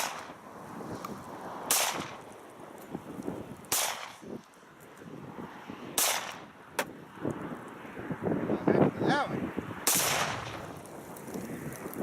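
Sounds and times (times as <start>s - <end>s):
pistol shots with echo: 1.7s - 2.2s, 3.7s - 4.2s, 6.0s - 6.5s, 9.8s - 10.7s.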